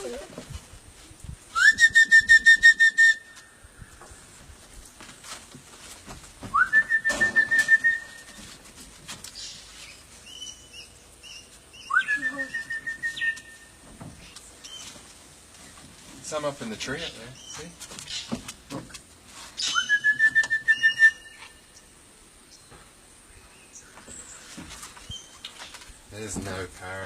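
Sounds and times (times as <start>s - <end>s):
person whistling trilled call: 1.5s - 3.5s, 6.5s - 8.4s, 11.8s - 13.8s, 19.6s - 21.6s.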